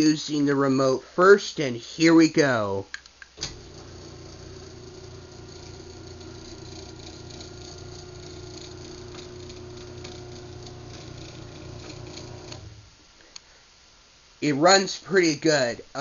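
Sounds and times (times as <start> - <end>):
garage door opener running: 3.4 - 12.9.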